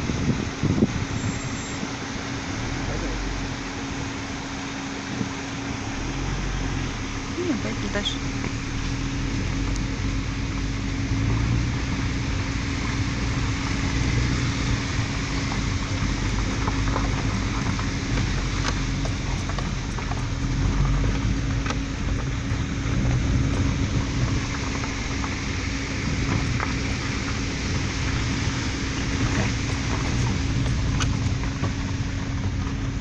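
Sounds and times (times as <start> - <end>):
car engine and tyre rumble: 0.0 - 33.0
low hum: 0.0 - 33.0.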